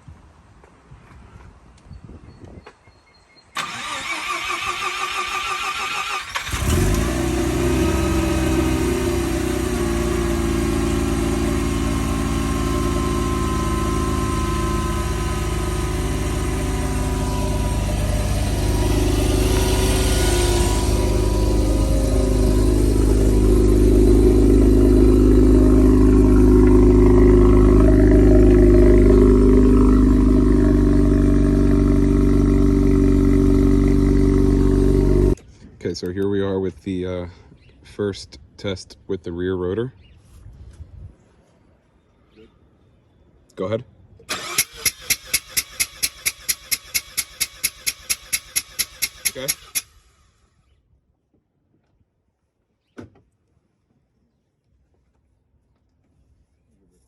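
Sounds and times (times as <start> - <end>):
engine starter cranking: 3.6 - 7.7, 44.3 - 50.2
engine idling: 6.0 - 35.4, 44.3 - 50.2.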